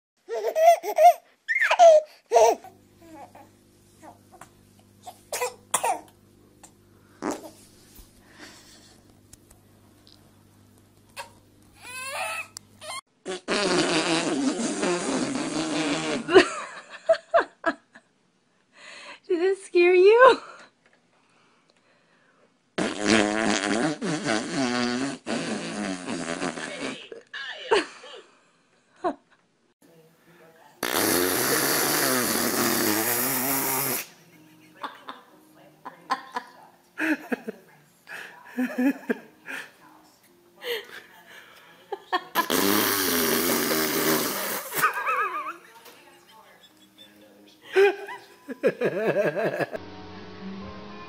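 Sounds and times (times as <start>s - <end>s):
faint electrical hum: 0.2s - 13.3s
baby squealing and laughing: 0.3s - 3.3s, 11.8s - 13.0s
buzzing fart sounds: 7.1s - 7.6s, 12.8s - 16.5s, 22.8s - 27.1s, 30.8s - 34.1s, 42.3s - 45.1s.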